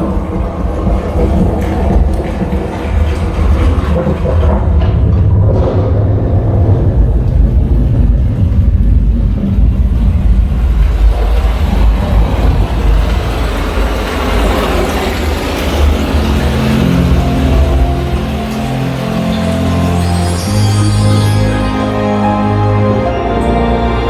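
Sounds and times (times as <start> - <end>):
deep rumble and whoosh: 0.2 - 19.2
steady musical tones: 15.0 - 24.0.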